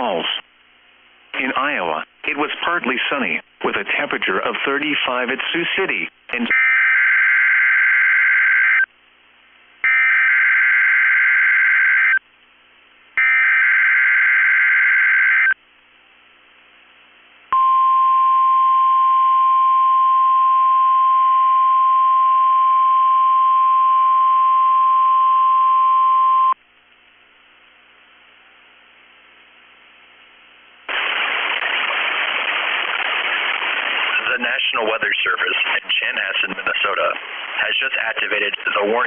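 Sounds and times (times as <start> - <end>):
steady warning alarm tone: 13.2 - 15.6.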